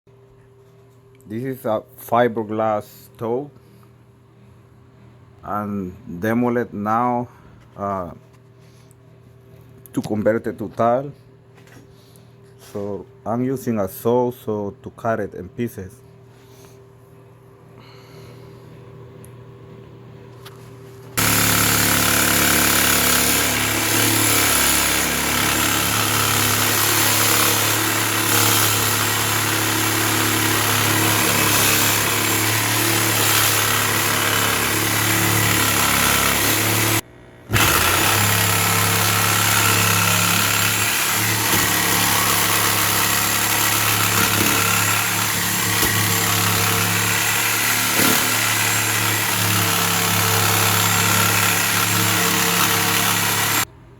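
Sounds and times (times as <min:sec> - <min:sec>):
power saw cutting fiberglass: 0:21.2 - 0:53.7.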